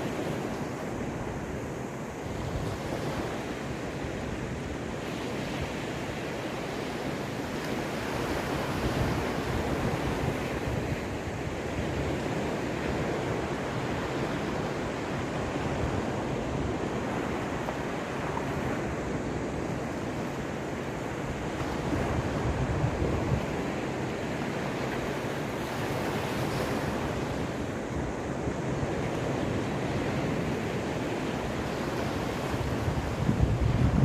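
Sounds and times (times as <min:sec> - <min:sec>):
waves breaking on shore: 0:00.0 - 0:34.0
wind buffeting microphone: 0:00.0 - 0:34.0.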